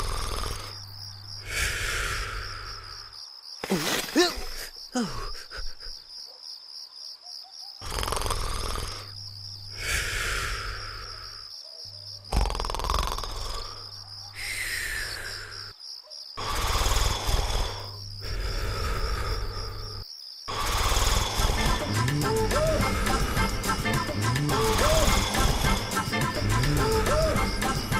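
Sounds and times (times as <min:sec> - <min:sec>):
cartoon snoring with whistle: 0:00.0 - 0:00.8, 0:07.8 - 0:11.4, 0:12.3 - 0:15.7, 0:16.4 - 0:27.9.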